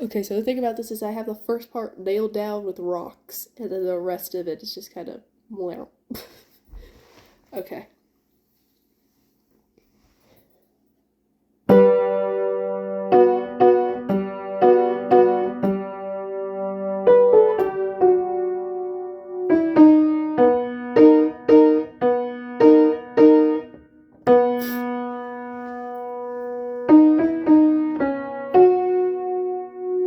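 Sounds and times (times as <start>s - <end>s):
piano played slowly: 11.7s - 30.0s.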